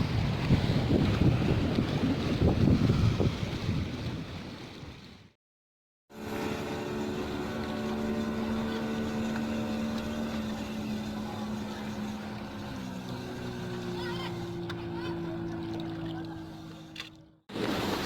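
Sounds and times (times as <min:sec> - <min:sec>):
wind rumbling on microphone: 0:00.0 - 0:05.3
boat motor humming: 0:06.1 - 0:18.0.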